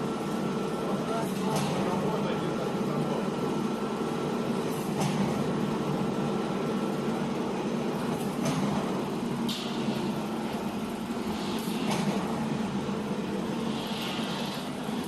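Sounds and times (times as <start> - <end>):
welding machine humming: 3.2 - 15.0.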